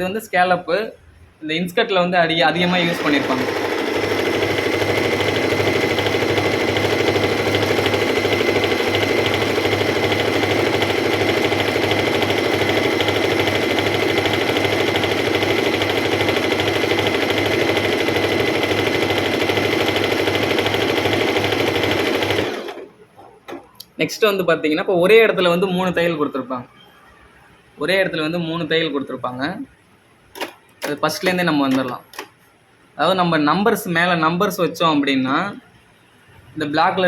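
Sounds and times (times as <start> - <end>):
electric sewing machine running: 2.5 - 22.9.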